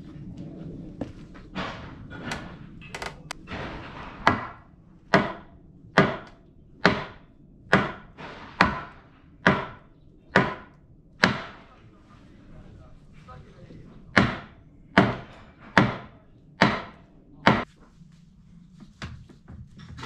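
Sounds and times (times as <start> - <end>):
hammer striking timber: 3.5 - 11.7, 14.1 - 17.7.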